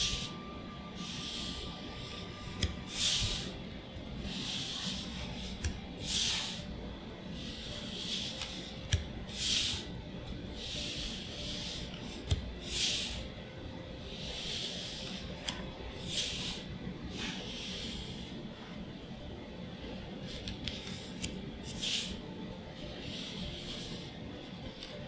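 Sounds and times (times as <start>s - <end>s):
cards sliding with papery swish: 1.0s - 3.6s.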